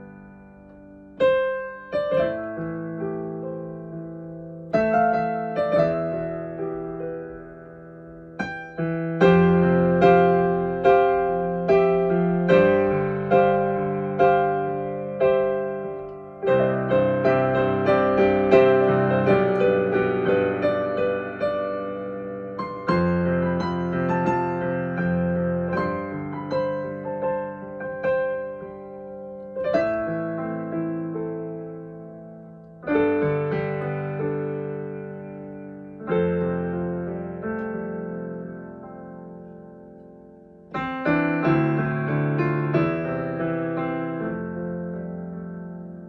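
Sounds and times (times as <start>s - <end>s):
slow gentle piano chords: 0.0s - 46.0s.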